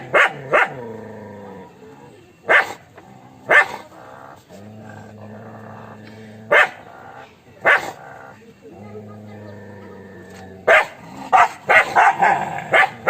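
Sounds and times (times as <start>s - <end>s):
dog barking: 0.0s - 0.8s, 2.5s - 2.8s, 3.5s - 3.9s, 6.5s - 6.9s, 7.6s - 8.0s, 10.6s - 13.0s.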